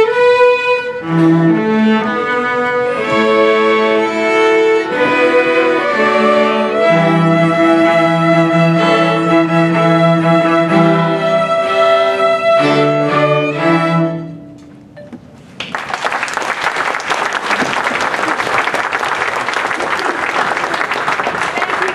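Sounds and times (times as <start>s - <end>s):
string ensemble playing bowed notes: 0.0s - 14.9s.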